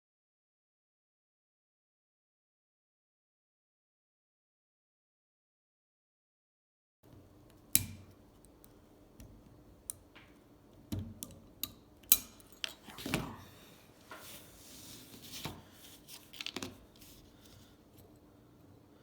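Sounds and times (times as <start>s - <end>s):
soft rustle: 12.8s - 18.1s.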